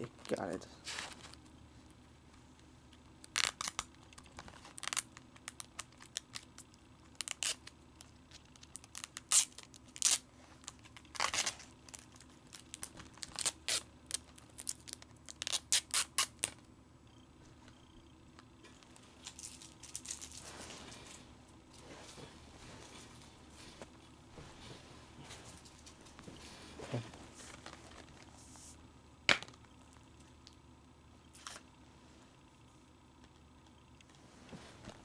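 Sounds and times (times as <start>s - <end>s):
plastic wrap tearing and crinkling: 3.2s - 16.6s, 19.0s - 20.6s.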